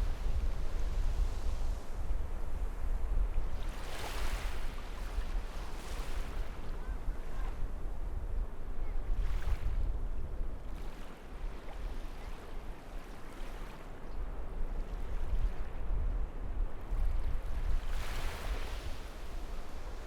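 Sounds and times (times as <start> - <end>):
wind gusting on microphone: 0.0 - 10.6
waves breaking on beach: 3.6 - 7.5, 17.6 - 20.0.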